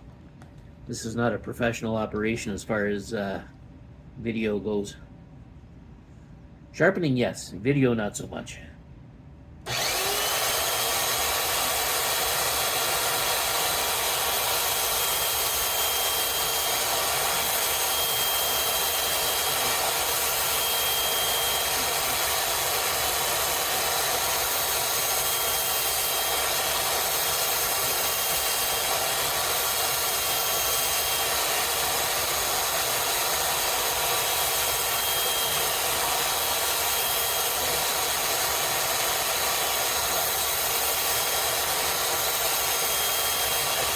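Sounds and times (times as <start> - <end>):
electric knife sharpener grinding: 9.7 - 43.9.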